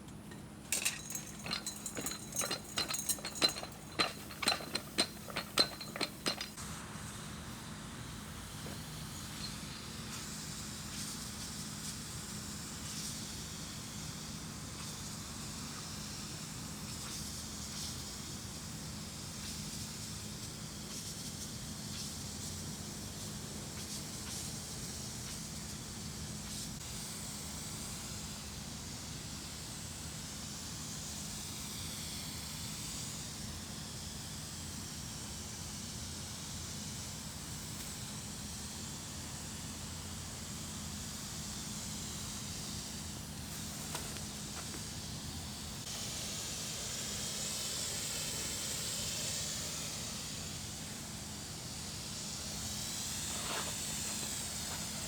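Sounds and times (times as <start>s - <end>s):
steady low hum: 0.0s - 6.6s
sprayer spraying liquid hiss: 0.2s - 55.0s.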